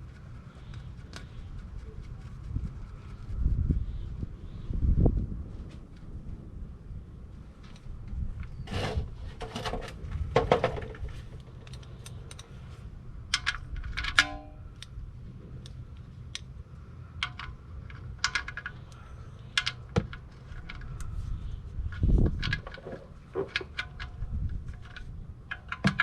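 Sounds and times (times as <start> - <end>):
ringing metallic clink: 14.1 - 14.8.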